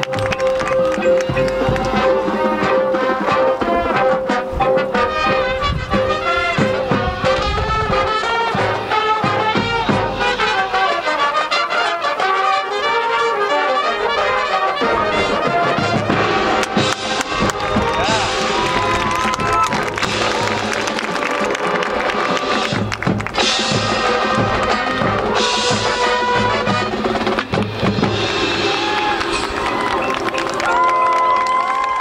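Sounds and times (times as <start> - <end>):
brass section playing: 0.0 - 32.0
drum hits: 22.4 - 30.3.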